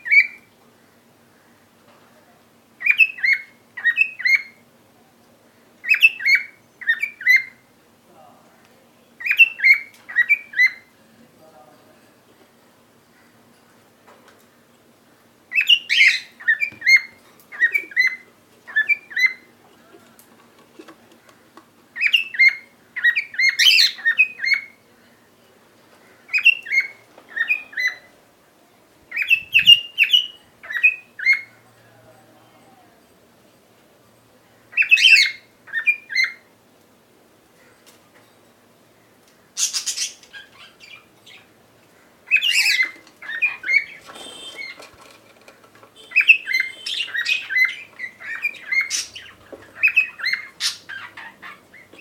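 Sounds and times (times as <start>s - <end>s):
cockatiel chirping: 42.3s - 44.9s, 46.0s - 52.0s.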